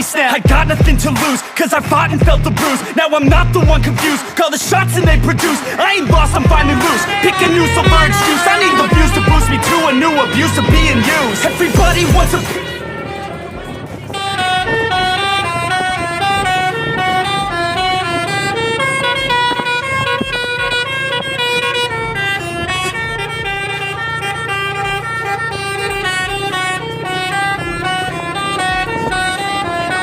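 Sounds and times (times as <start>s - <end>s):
musical bus horn: 0.0s - 30.0s
road and engine noise: 0.0s - 30.0s.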